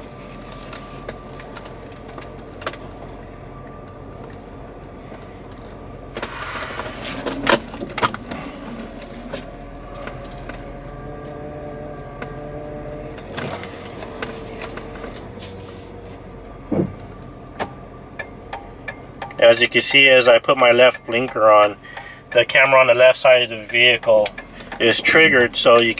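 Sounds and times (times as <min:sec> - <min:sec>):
engine and road hum: 0:00.0 - 0:25.9
short thump: 0:16.7 - 0:17.1.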